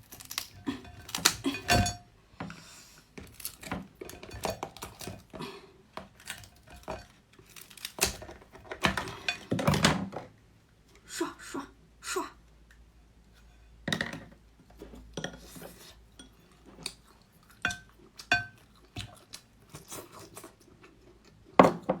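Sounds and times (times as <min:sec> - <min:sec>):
dishes and cutlery clinking: 0:00.6 - 0:02.1, 0:03.6 - 0:05.3, 0:06.2 - 0:07.2, 0:08.7 - 0:10.0, 0:17.7 - 0:18.6.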